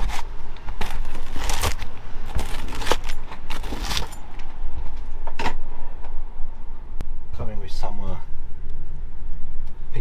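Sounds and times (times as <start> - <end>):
blade cutting through pizza crust: 0.0 - 4.2.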